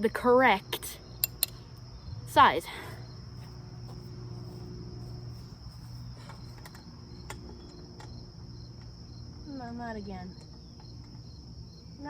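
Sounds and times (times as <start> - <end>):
small parts clicking: 1.2 - 1.6.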